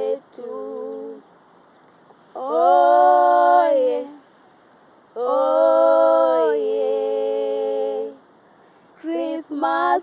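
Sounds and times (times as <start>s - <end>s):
voices chanting: 2.4s - 4.3s.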